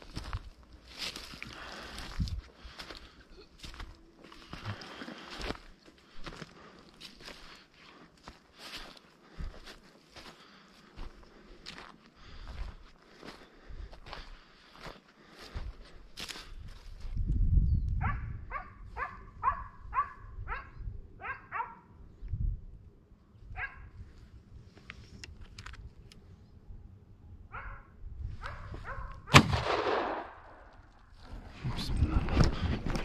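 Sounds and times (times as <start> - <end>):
hounds yelping: 18.0 - 21.9, 23.6 - 23.9, 27.5 - 29.2
loud gunshot echoing: 29.3 - 30.7.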